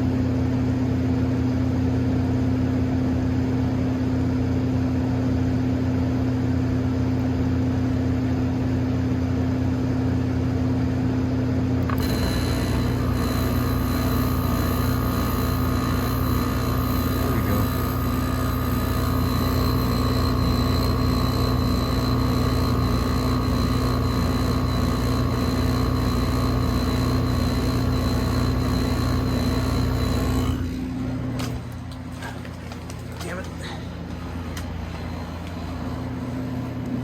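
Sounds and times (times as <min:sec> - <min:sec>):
air conditioner humming: 0:11.5 - 0:37.0
faint high whine: 0:11.8 - 0:31.5.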